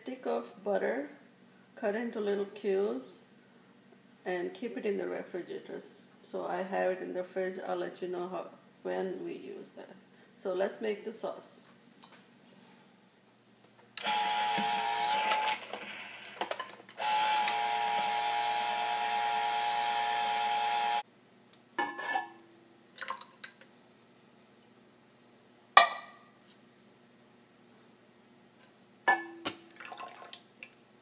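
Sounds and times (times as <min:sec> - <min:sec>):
electric can opener whining: 0:14.0 - 0:21.0.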